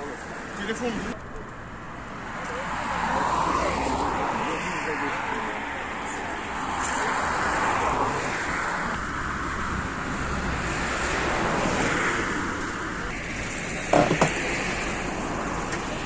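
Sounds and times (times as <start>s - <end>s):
vehicles passing by: 0.0s - 16.0s
sharp knocks: 13.9s - 14.4s.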